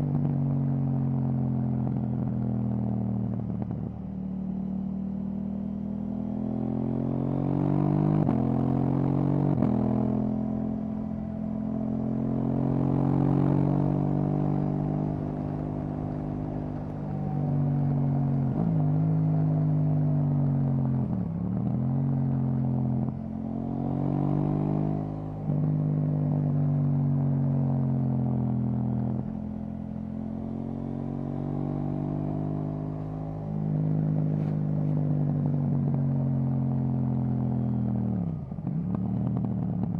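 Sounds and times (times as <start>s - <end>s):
motorcycle engine revving: 6.5s - 21.2s, 27.3s - 35.8s.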